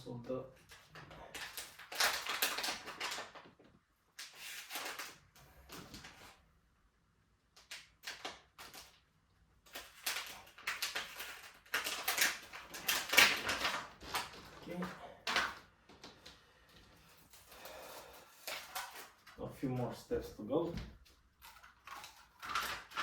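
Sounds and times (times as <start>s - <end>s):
packaging rustling and scraping: 0.6s - 3.6s, 4.2s - 6.4s, 9.7s - 19.4s, 20.5s - 23.0s.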